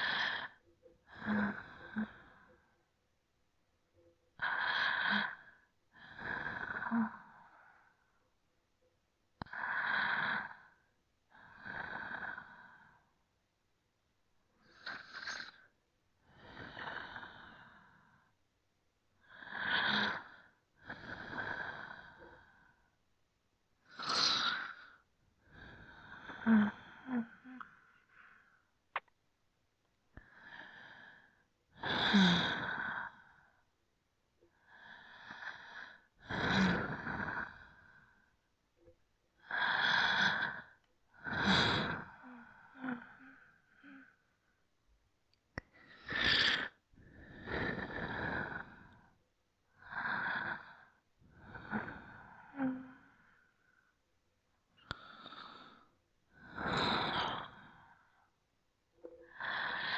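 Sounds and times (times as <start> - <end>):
slow deep breathing: 0.0 - 2.8, 39.4 - 44.7, 45.6 - 54.0, 54.8 - 58.3, 59.0 - 59.9.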